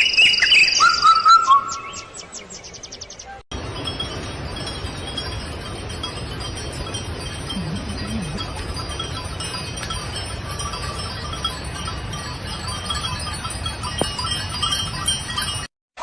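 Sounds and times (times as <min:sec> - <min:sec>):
continuous rushing noise: 0:03.6 - 0:15.0
faint tinkling tones: 0:03.6 - 0:15.7
low wavering animal call: 0:07.6 - 0:08.7.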